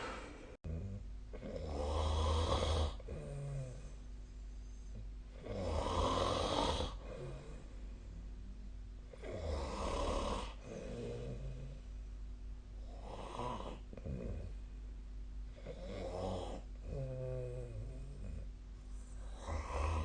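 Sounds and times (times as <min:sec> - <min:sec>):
soft breathing: 0:00.0 - 0:00.6, 0:17.7 - 0:20.0
person snoring: 0:00.0 - 0:04.0, 0:04.9 - 0:07.7, 0:09.1 - 0:11.8, 0:12.8 - 0:14.6, 0:15.5 - 0:18.5, 0:19.1 - 0:20.0.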